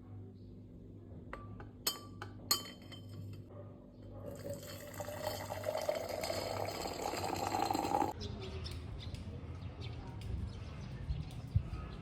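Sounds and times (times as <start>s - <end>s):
glass clinks: 1.9s - 3.4s
liquid pouring into a glass: 4.3s - 8.2s.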